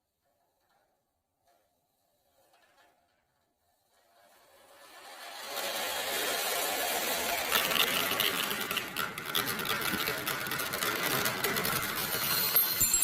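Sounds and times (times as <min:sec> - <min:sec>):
marbles rolling and rattling: 0:05.5 - 0:13.0.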